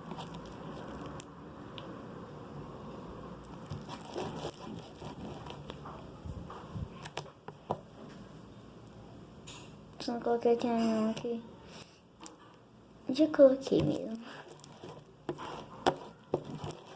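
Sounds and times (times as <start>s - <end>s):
slime being stirred: 0.0s - 1.3s, 3.5s - 5.9s, 13.6s - 16.9s.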